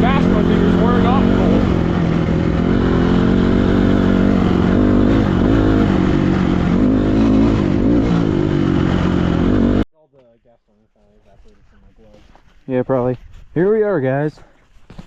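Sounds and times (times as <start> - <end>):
small vehicle engine running: 0.0 - 9.8.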